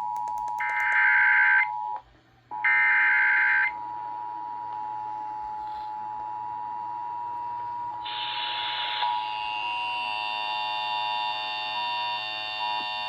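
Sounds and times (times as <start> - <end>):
two-tone alarm: 6.3 - 13.0.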